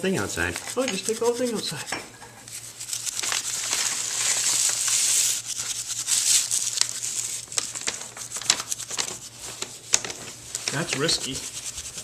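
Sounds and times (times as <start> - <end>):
dry material crinkling: 0.2 - 12.0
small crackles and clicks: 7.5 - 11.0.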